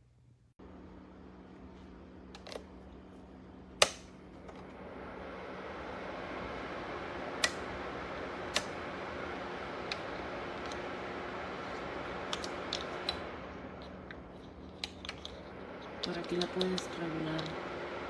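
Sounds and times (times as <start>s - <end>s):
faint hum: 0.0s - 18.0s
heater fan blowing: 0.0s - 18.0s.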